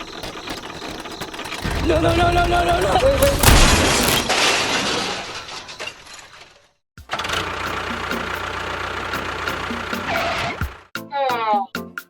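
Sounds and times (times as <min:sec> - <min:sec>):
crashing clattering noise: 0:00.3 - 0:06.8.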